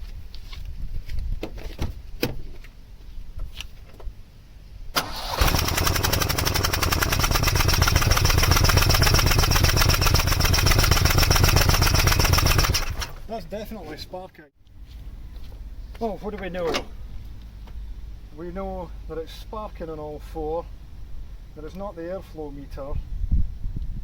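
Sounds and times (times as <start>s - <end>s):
car engine starting and idling: 5.0s - 13.4s.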